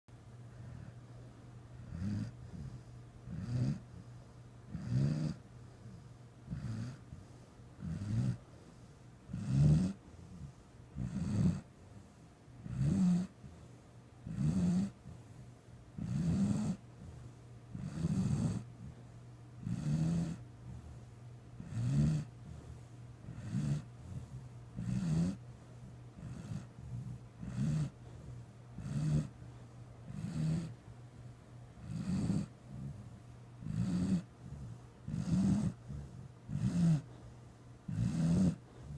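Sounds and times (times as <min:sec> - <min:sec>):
person snoring: 0:01.9 - 0:03.8, 0:04.7 - 0:05.4, 0:09.3 - 0:10.0, 0:12.6 - 0:13.3, 0:14.3 - 0:15.0, 0:16.0 - 0:16.8, 0:17.7 - 0:18.7, 0:19.6 - 0:20.4, 0:21.6 - 0:22.6, 0:23.3 - 0:25.4, 0:26.2 - 0:28.0, 0:28.8 - 0:29.3, 0:30.1 - 0:30.7, 0:31.8 - 0:33.0, 0:33.6 - 0:37.1, 0:37.9 - 0:38.9.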